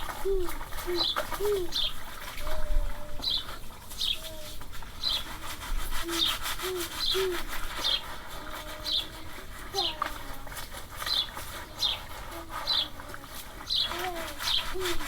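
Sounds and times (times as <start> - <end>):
dove cooing: 0.0 - 4.6, 6.0 - 10.6, 11.2 - 15.0
rhythmic rubbing strokes: 3.5 - 15.0
small bird chirping: 13.7 - 15.0.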